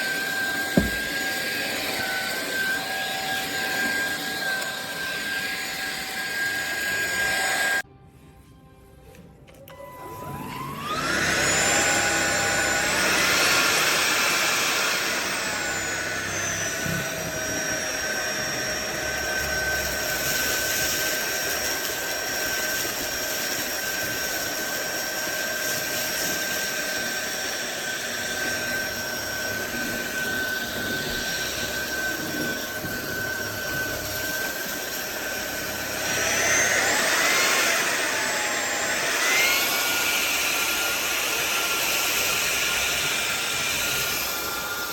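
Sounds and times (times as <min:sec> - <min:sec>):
vacuum cleaner motor whine: 0:00.0 - 0:07.9, 0:09.5 - 0:44.9.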